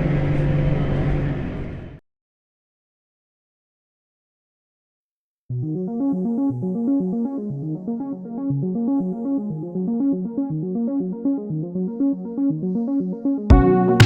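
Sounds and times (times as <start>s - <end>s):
synthesizer music with repeating pattern: 5.5s - 14.0s.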